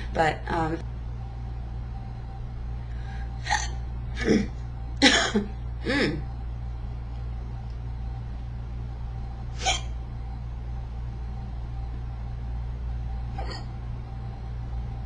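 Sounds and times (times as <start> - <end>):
steady low hum: 0.0 - 15.0
woman hiccuping: 3.4 - 3.8, 5.0 - 6.2, 9.6 - 9.9, 13.4 - 13.7.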